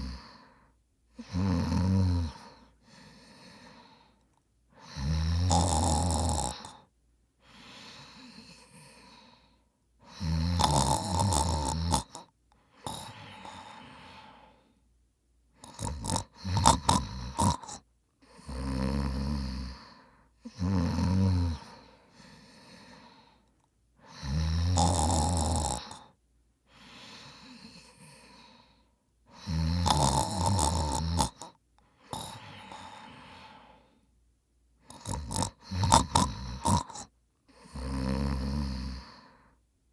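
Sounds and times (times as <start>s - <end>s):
man snoring: 0.0s - 0.5s, 1.2s - 4.0s, 4.8s - 6.9s, 10.1s - 14.6s, 15.6s - 23.2s, 24.0s - 26.2s, 29.3s - 33.9s, 34.8s - 39.4s
soft breaths: 2.2s - 5.1s, 6.5s - 10.3s, 12.1s - 14.9s, 17.6s - 20.6s, 21.5s - 24.3s, 25.7s - 34.2s, 34.8s - 39.7s.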